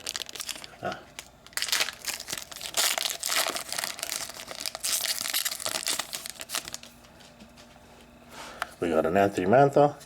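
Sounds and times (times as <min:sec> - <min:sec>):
card pack wrapper crinkling and tearing: 0:00.0 - 0:06.9.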